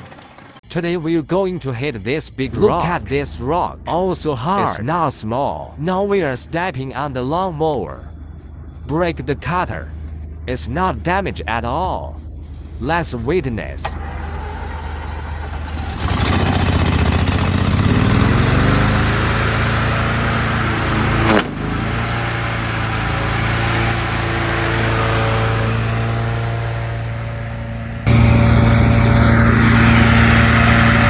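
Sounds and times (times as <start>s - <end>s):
lawn mower engine revving: 0.0s - 0.7s, 7.4s - 31.0s
sharp crack: 15.8s - 27.4s.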